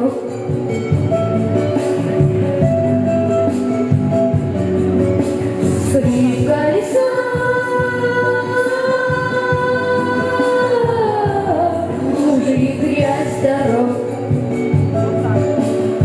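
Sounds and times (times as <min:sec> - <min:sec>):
pop backing track: 0:00.0 - 0:16.0
boy singing: 0:05.8 - 0:14.3.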